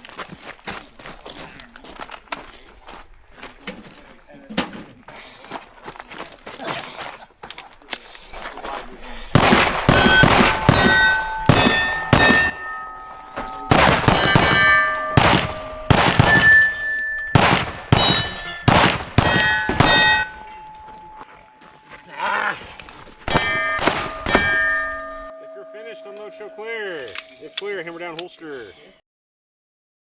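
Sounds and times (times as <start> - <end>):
pistol shots: 9.4 - 12.8, 13.6 - 20.4, 23.3 - 24.8
steel target plate ringing: 9.4 - 21.5, 23.1 - 28.1.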